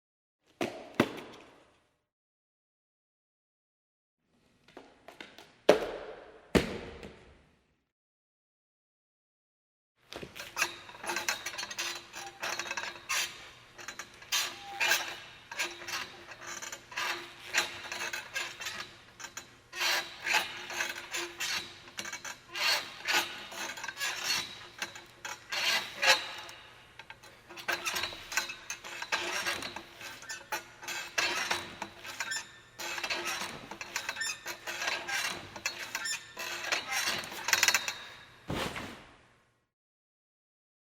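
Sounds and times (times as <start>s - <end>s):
gymnastics rings squeaking: 10.4s - 38.5s.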